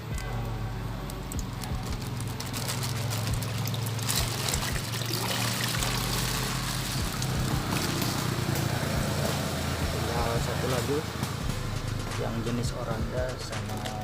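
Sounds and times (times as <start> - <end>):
steady low hum: 0.0 - 14.0
water pouring into pond: 1.3 - 11.1.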